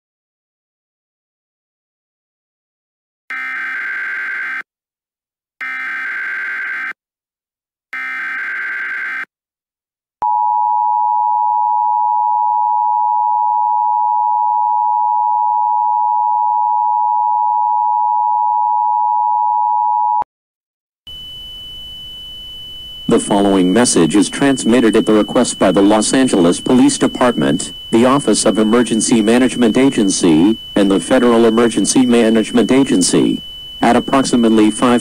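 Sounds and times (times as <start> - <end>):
two-tone attention signal: 21.1 - 35.0
warbling digital data tones: 21.1 - 35.0.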